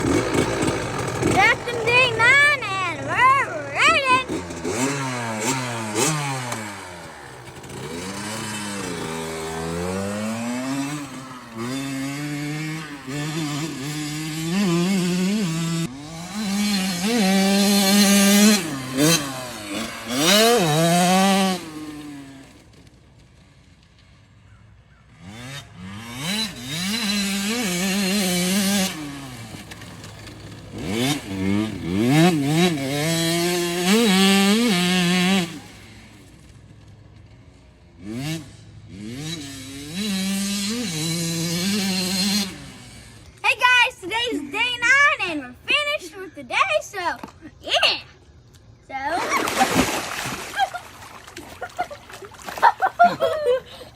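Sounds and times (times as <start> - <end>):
dirt bike engine revving: 0.0 - 46.7, 48.9 - 53.9.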